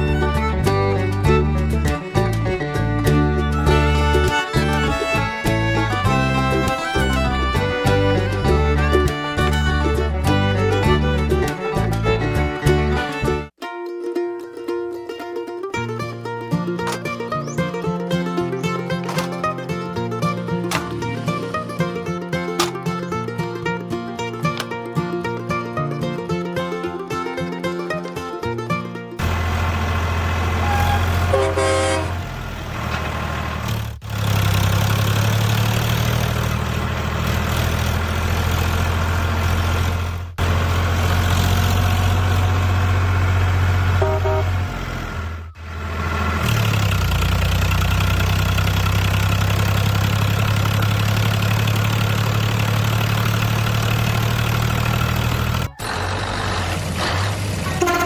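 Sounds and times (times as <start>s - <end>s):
truck engine humming: 0.0s - 13.6s, 14.2s - 58.0s
truck horn toots: 30.4s - 32.4s, 43.9s - 45.7s, 57.6s - 58.0s.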